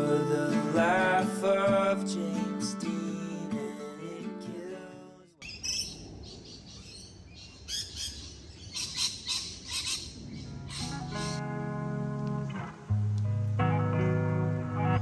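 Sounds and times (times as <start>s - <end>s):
song music: 0.0s - 5.1s, 10.8s - 15.0s
birds chirping: 5.4s - 11.4s.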